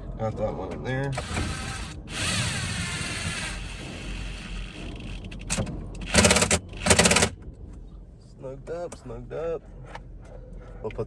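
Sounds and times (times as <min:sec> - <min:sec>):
tool rasping: 0:01.2 - 0:05.3, 0:06.0 - 0:07.3
rapid metallic clicking: 0:04.6 - 0:07.4.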